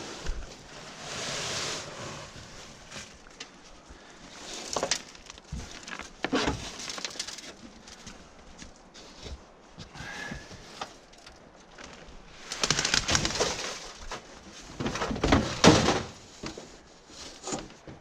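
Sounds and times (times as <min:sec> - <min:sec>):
junk clattering and scraping: 0:12.9 - 0:18.0.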